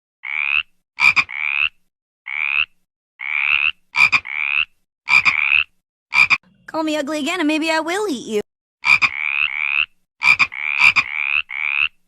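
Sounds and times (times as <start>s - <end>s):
frog chirps sound effect: 8.8s - 12.0s.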